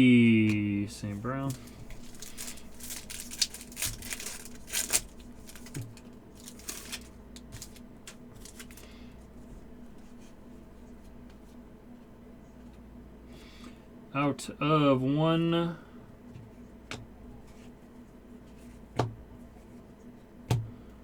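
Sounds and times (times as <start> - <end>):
cards being handled: 0.4 - 8.9
wrappers tearing and crinkling: 1.4 - 8.9.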